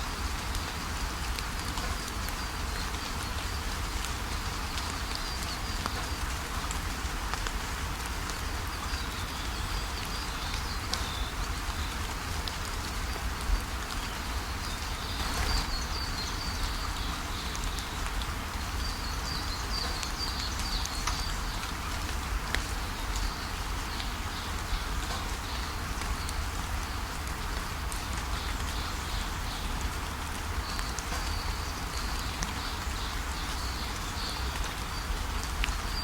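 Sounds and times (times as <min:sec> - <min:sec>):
birds chirping: 0:14.4 - 0:17.9
waterfall rushing: 0:14.8 - 0:17.0.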